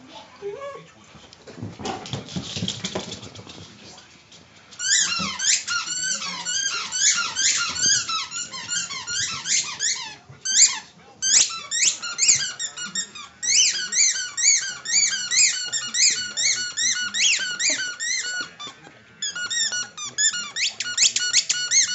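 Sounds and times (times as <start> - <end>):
rapid high-pitched squeaking: 4.8 - 21.9.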